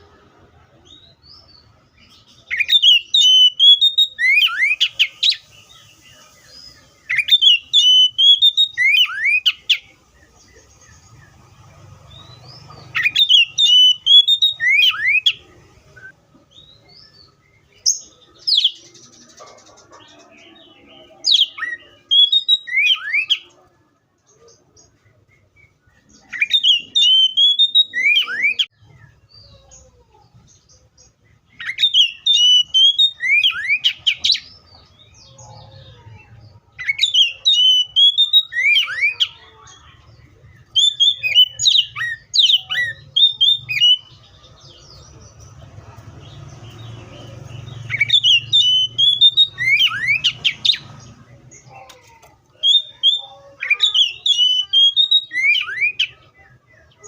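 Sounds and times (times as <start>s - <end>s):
bird singing whistled phrases: 2.4s - 6.0s, 7.0s - 9.9s, 13.0s - 15.4s, 21.2s - 23.5s, 25.6s - 28.7s, 31.6s - 34.5s, 36.8s - 39.4s, 40.6s - 44.2s, 47.8s - 50.9s, 52.6s - 56.2s.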